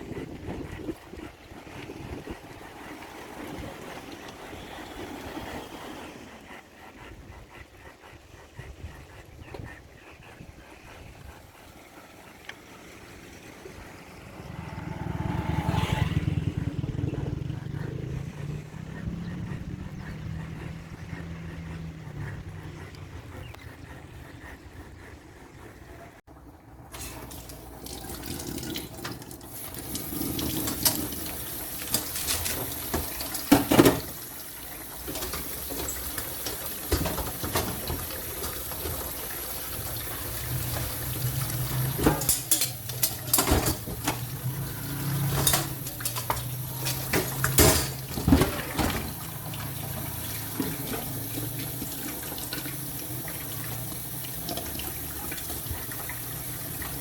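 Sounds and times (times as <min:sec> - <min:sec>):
tap water running into sink: 0:26.9 - 0:57.0
kitchenware clinking: 0:31.8 - 0:34.1, 0:41.8 - 0:49.0.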